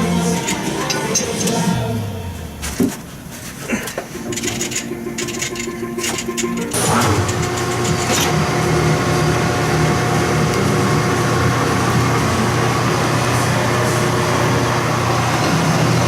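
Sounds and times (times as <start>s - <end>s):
lathe motor hum: 4.2s - 16.0s.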